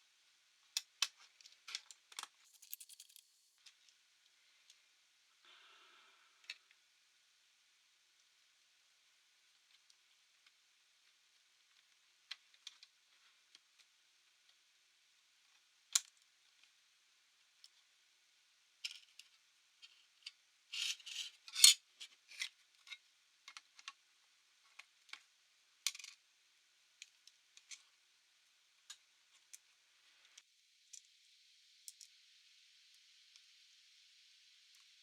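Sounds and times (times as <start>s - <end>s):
clicks of small parts handled: 0.8s - 3.8s.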